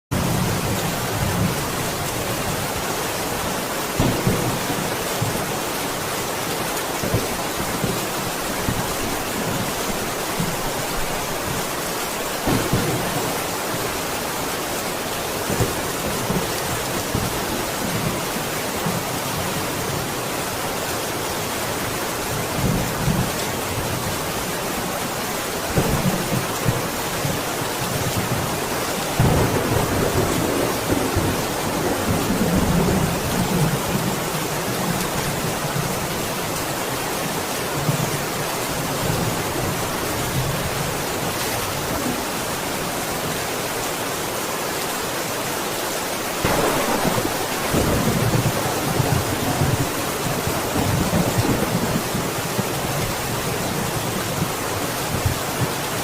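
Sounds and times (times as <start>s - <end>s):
heavy rain: 0.1s - 56.0s
thunder rumbling: 12.4s - 14.1s, 29.1s - 34.1s, 46.4s - 53.3s.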